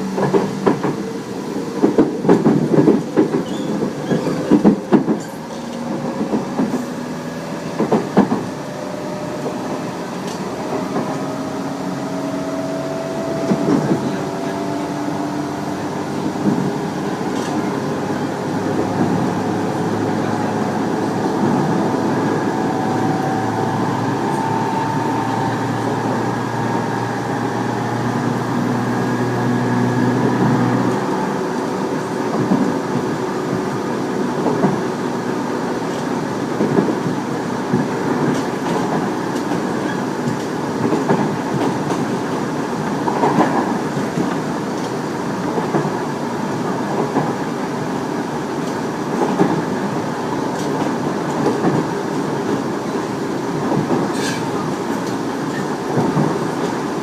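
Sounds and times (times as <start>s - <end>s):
train wheels clacking on rail joints: 0.0s - 1.1s, 1.8s - 8.6s, 30.2s - 33.8s, 34.4s - 34.9s, 35.8s - 47.5s, 48.6s - 49.8s, 50.5s - 57.0s.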